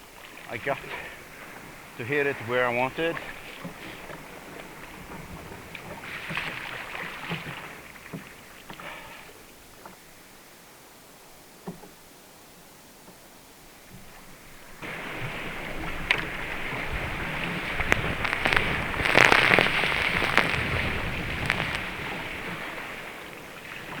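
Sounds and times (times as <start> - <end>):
sharp water splashes: 14.8 - 24.0
whitewater rushing: 14.8 - 24.0.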